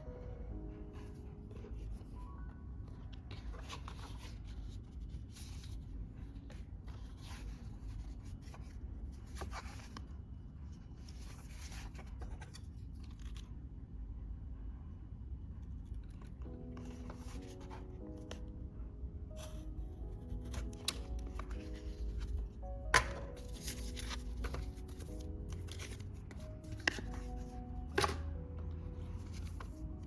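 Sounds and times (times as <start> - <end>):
packaging rustling and scraping: 19.4 - 28.1, 29.0 - 30.0.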